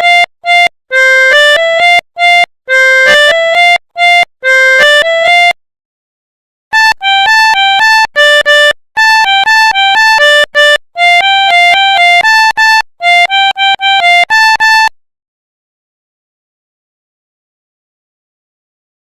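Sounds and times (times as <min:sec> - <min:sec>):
melodica playing quick short notes: 0:00.0 - 0:05.6, 0:06.8 - 0:15.0.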